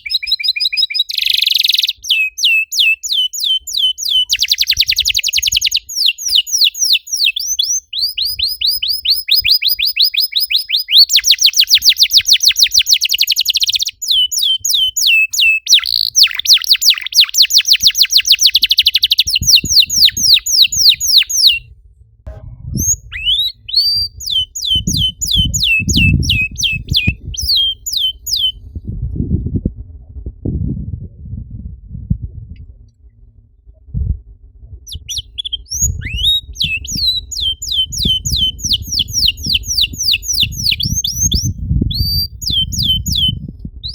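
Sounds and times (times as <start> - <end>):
canary singing trills: 0.0 - 21.7, 22.7 - 28.6, 34.9 - 43.9
irregular low thumping: 21.5 - 43.9.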